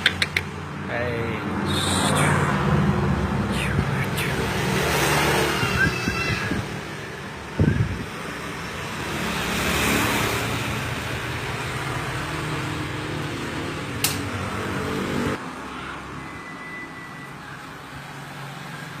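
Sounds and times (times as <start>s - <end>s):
sharp click: 14.0s - 14.2s.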